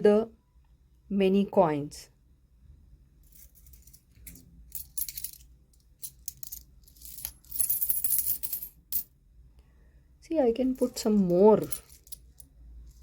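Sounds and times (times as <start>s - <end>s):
metal coins clinking: 3.2s - 9.1s, 10.8s - 12.5s.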